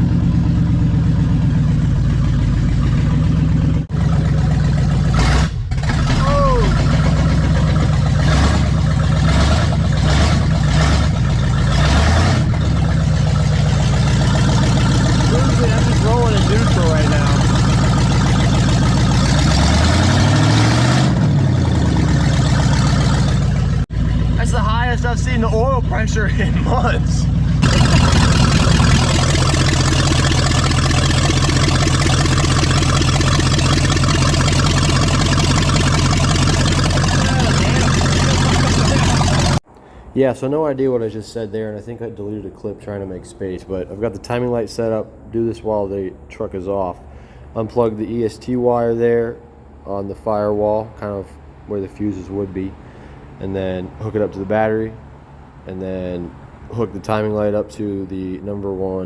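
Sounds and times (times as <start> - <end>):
pickup engine revving: 0.0 - 39.6.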